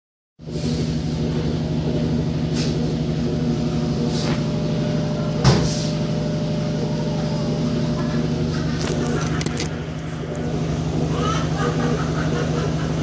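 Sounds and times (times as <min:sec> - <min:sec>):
washing machine motor hum: 0:00.4 - 0:13.0
thump: 0:05.4 - 0:05.8.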